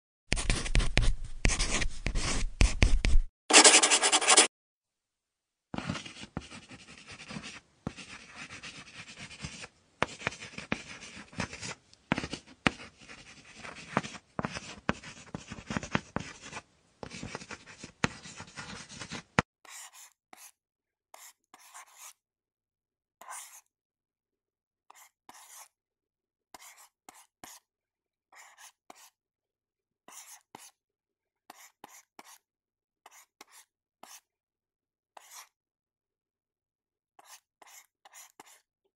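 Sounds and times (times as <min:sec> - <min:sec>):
pen scratching on paper: 0:00.3 - 0:04.5, 0:05.8 - 0:20.6, 0:21.2 - 0:22.2, 0:23.2 - 0:23.7, 0:25.0 - 0:25.7, 0:26.6 - 0:27.6, 0:28.4 - 0:29.2, 0:30.1 - 0:30.8, 0:31.5 - 0:32.4, 0:33.0 - 0:34.2, 0:35.2 - 0:35.5, 0:37.2 - 0:38.7.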